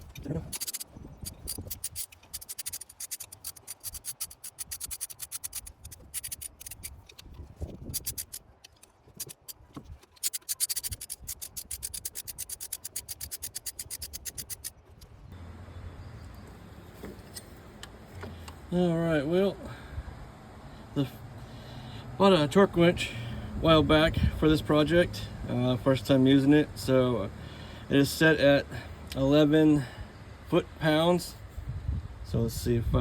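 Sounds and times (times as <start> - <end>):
hand ratchet clicking: 0.0 - 15.1.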